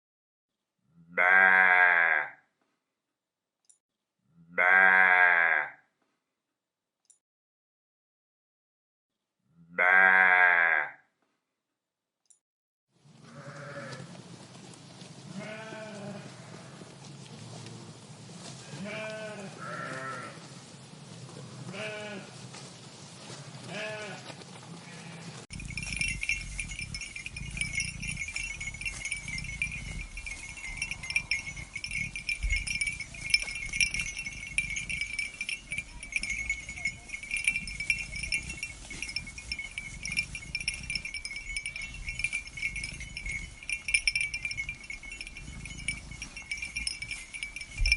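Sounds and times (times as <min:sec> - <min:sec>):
sheep bleating: 0:01.1 - 0:02.4, 0:04.5 - 0:05.8, 0:09.7 - 0:11.0, 0:13.3 - 0:14.1, 0:15.3 - 0:16.8, 0:18.7 - 0:20.4, 0:21.7 - 0:22.3, 0:23.7 - 0:25.4
high shimmering ringing: 0:25.6 - 0:47.9.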